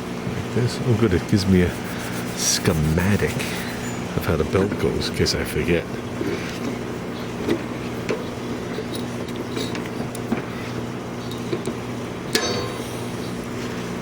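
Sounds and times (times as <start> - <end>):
low mechanical hum: 0.0 - 14.0
sharp metallic clank: 12.3 - 13.3.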